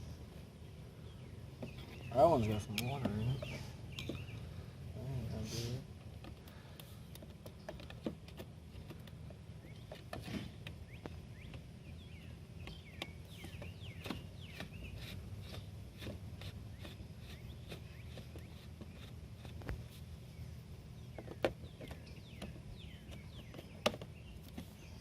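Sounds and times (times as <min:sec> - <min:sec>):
birds chirping: 0:00.0 - 0:25.0
hands and tools clicking and tapping: 0:06.0 - 0:11.7, 0:21.0 - 0:24.8.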